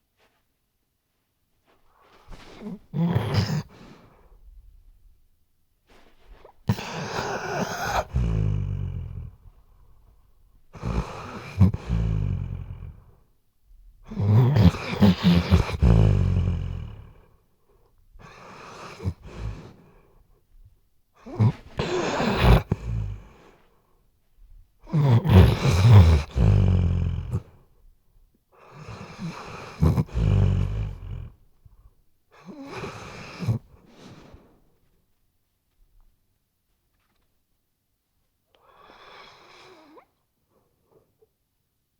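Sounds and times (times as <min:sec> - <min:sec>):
dog snoring loudly: 0:02.6 - 0:03.8, 0:06.7 - 0:09.6, 0:10.7 - 0:13.2, 0:14.1 - 0:17.3, 0:18.2 - 0:19.9, 0:21.2 - 0:23.5, 0:24.9 - 0:27.6, 0:28.7 - 0:31.4, 0:32.4 - 0:33.7.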